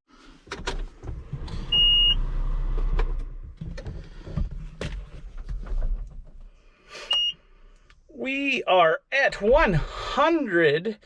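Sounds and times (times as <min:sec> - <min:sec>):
high electronic beep: 0:01.7 - 0:02.2.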